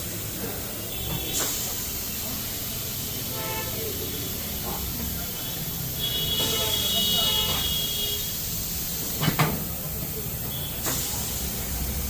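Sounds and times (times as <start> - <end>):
short sharp hiss: 1.0 - 3.7.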